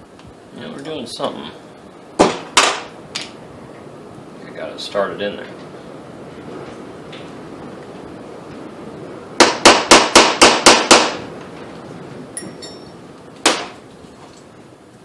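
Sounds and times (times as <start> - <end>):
hammer striking steel punch: 9.4 - 11.2, 13.5 - 13.8
light metal clinks: 12.4 - 13.0.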